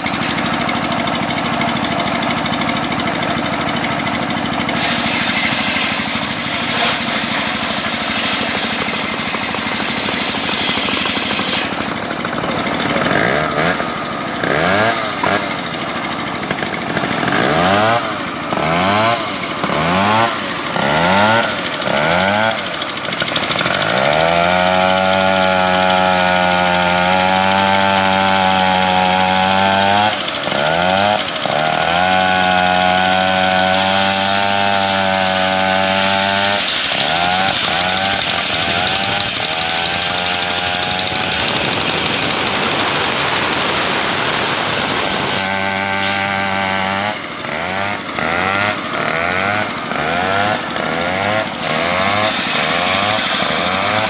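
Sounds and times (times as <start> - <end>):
chainsaw engine revving: 0.0 - 54.0.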